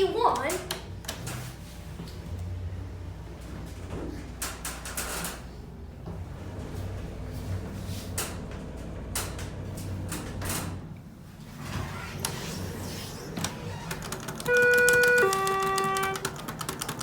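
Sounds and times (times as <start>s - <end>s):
elevator clicks and rattles: 0.0s - 2.3s, 3.4s - 11.0s, 13.3s - 17.0s
elevator car humming: 0.9s - 17.0s.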